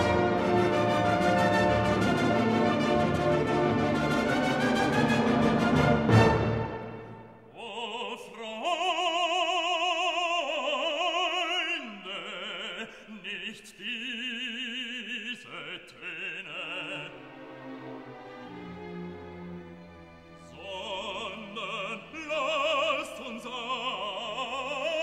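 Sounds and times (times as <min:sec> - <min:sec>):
orchestral music: 0:00.0 - 0:07.5, 0:16.4 - 0:25.0
operatic voice singing: 0:07.5 - 0:17.5, 0:20.4 - 0:25.0.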